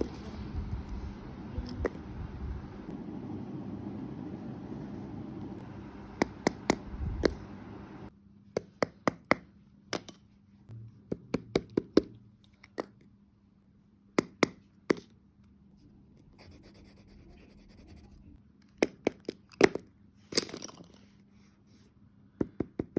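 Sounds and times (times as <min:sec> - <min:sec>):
faint steady hum: 0:00.0 - 0:08.6.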